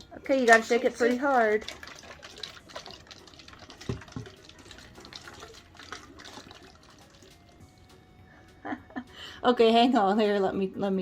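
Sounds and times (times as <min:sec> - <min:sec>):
water sloshing in plastic bottles: 0:00.3 - 0:07.6.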